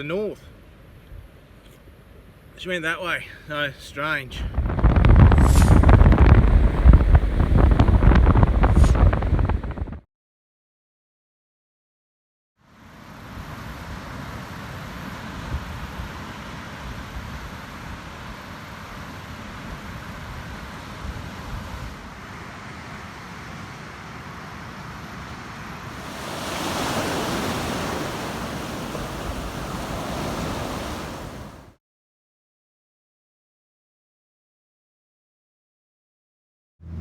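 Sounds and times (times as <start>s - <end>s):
wind buffeting microphone: 4.4s - 10.0s, 25.9s - 31.7s
ocean surf: 25.9s - 31.8s.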